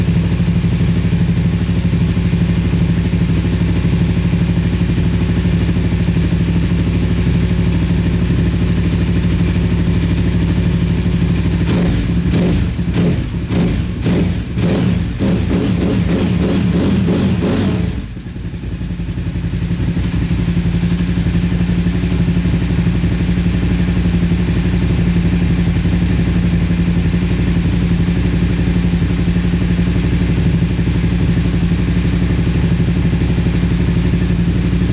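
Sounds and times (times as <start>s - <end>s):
motorcycle engine running: 0.0s - 34.9s.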